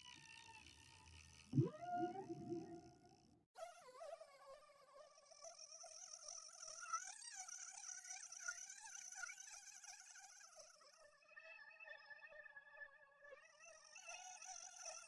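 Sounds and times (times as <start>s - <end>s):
faint whale call: 1.6s - 2.9s.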